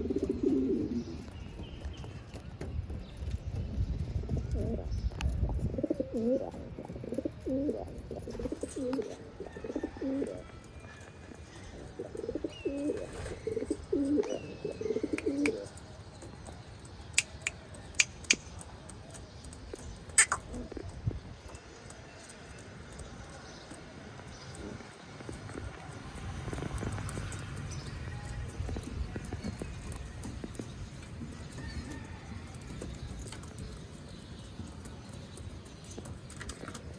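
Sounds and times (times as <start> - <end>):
pigeons cooing: 0.0 - 1.3, 4.3 - 4.9, 5.5 - 15.8, 20.1 - 21.1
sharp clicks: 15.2 - 20.6.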